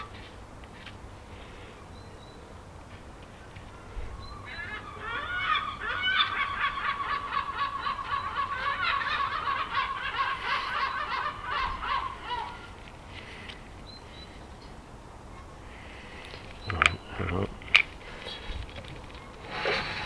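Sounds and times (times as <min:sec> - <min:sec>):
bird chirping and trilling: 0:03.7 - 0:09.4, 0:15.4 - 0:20.0.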